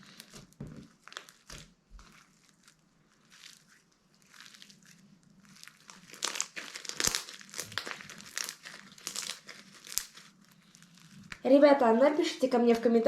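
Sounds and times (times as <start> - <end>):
slime crackling when kneaded: 0.0 - 11.6.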